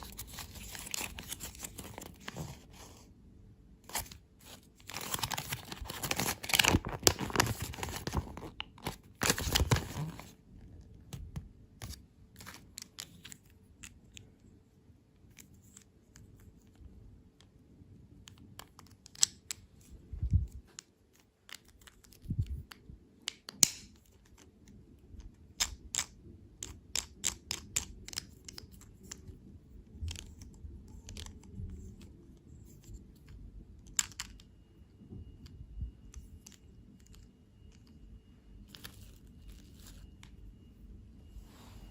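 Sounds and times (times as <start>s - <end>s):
candy packaging tearing and crinkling: 0.0s - 2.7s, 3.9s - 10.4s
small clicks and taps of wrappers: 18.2s - 19.9s, 20.7s - 29.3s.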